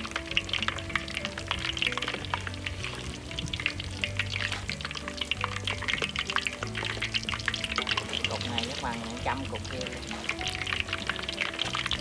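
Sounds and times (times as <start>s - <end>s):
food deep-frying in hot oil: 0.0s - 12.0s.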